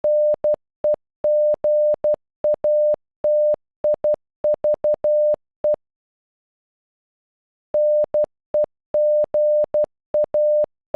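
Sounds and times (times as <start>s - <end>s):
morse code beeps: 0.0s - 0.6s, 1.3s - 5.8s, 7.8s - 10.7s.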